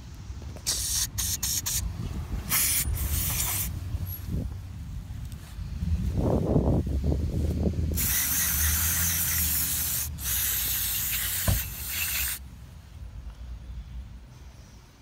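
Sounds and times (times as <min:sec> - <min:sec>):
pressurised spray hissing: 0:00.6 - 0:01.9, 0:02.5 - 0:03.8, 0:07.9 - 0:12.4.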